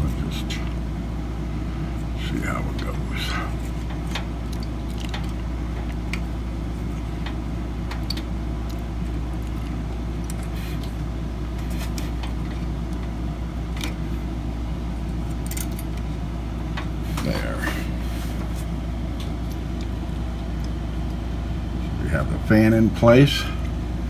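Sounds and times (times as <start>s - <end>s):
low background hum: 0.0s - 24.0s
small parts clicking and tapping: 15.3s - 16.1s.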